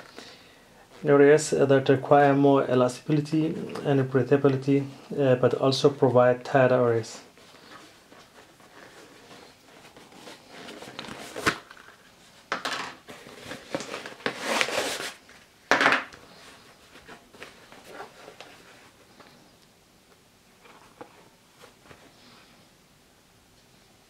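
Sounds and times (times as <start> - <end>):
shoe rustling and rubbing: 7.3 - 12.4, 13.0 - 15.3, 16.2 - 19.5.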